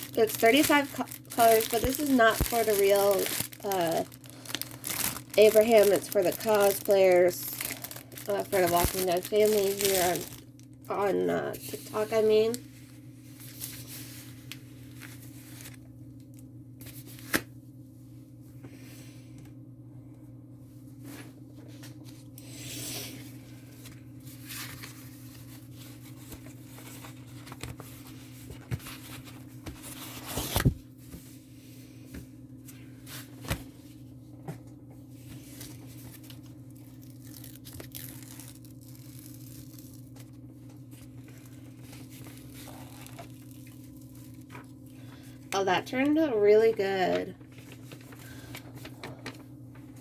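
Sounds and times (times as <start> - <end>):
canvas and packaging rustling: 0.0 - 12.6, 35.4 - 44.8
steady low hum: 0.0 - 50.0.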